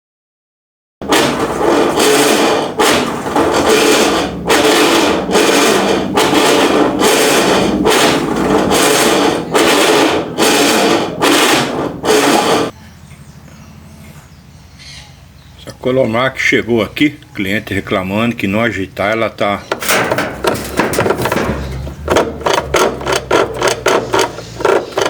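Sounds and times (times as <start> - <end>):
washing machine grinding: 1.0 - 12.8, 19.1 - 25.0.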